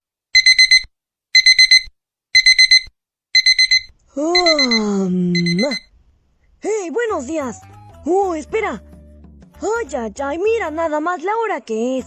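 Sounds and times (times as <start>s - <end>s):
digital alarm clock beeping: 0.4s - 5.9s
long drawn-out voice: 4.2s - 5.6s.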